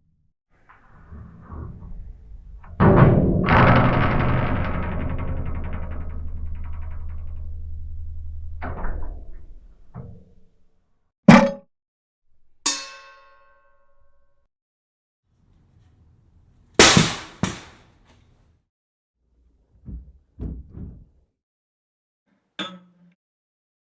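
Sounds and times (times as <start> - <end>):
ringing metal clang: 11.3 - 11.6, 12.7 - 14.1, 16.8 - 17.8
bright metal crashing hits: 16.8 - 17.8
short metal clank: 16.8 - 17.8.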